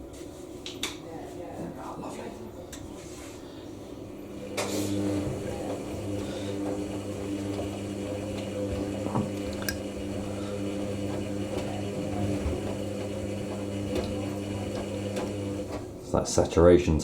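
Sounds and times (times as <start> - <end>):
washing machine motor humming: 3.8 - 17.0
water swishing in drum: 4.3 - 16.0.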